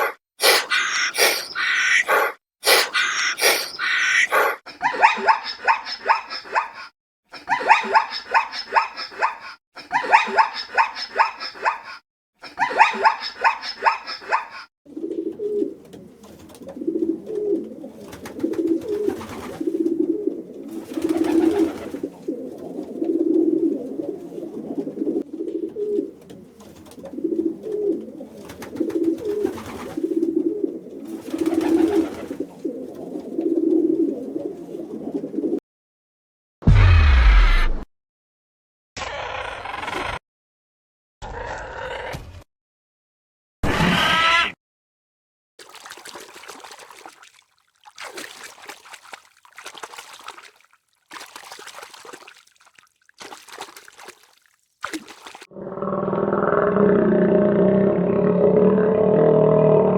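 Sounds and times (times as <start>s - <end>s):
low cooing calls: 0.0s - 4.6s, 12.8s - 35.6s
rapid pulsed high-pitched animal calls: 0.0s - 4.6s.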